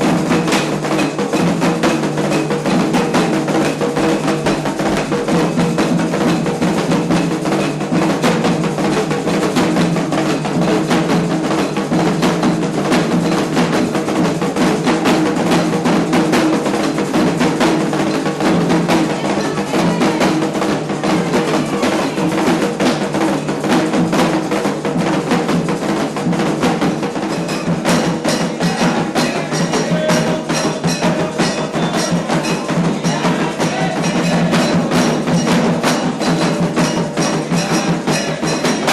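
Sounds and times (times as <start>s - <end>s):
hand drums playing fast rhythm: 0.0s - 38.9s
metal bell struck: 27.3s - 38.9s.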